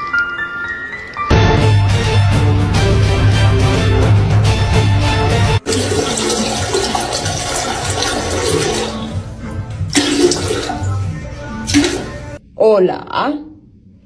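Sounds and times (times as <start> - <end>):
rushing water: 5.6 - 9.2, 10.0 - 11.0
faint music: 6.1 - 14.0.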